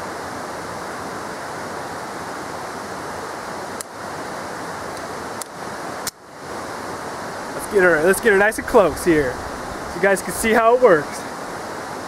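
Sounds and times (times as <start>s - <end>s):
wind on microphone: 6.6s - 10.2s.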